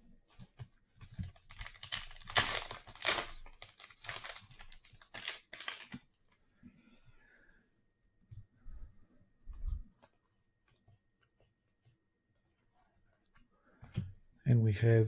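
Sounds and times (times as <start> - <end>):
wrapper crinkling and rustling: 1.2 - 6.1.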